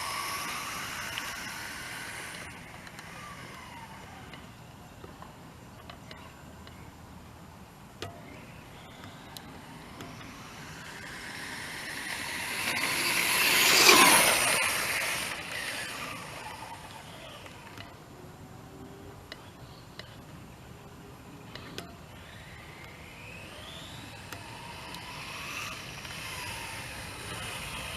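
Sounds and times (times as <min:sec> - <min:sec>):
electric toy car driving past: 0:00.0 - 0:04.5, 0:08.3 - 0:18.0, 0:22.0 - 0:27.9.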